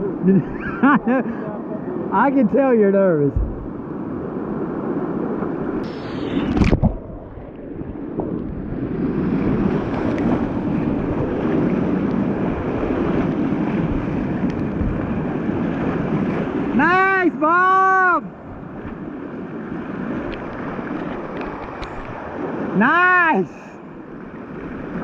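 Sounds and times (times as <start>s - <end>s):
wind buffeting microphone: 3.2s - 16.9s, 18.3s - 22.8s.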